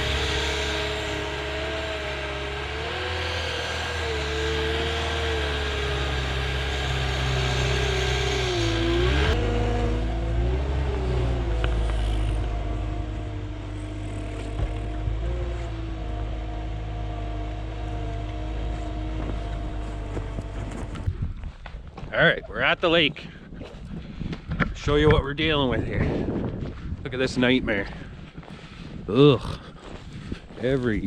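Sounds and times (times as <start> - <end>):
vehicle engine driving over snow: 0.0 - 22.8.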